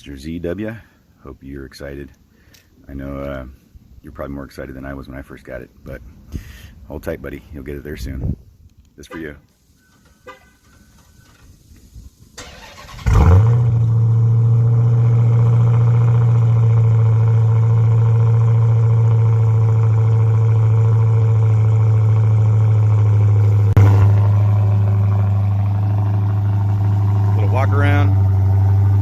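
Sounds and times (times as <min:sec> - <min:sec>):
car engine starting and idling: 0:12.3 - 0:29.0.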